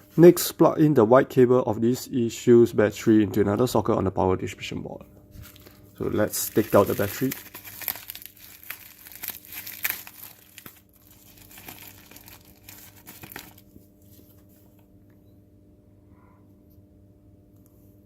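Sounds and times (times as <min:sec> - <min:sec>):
plastic packaging crinkling: 0:05.4 - 0:14.7.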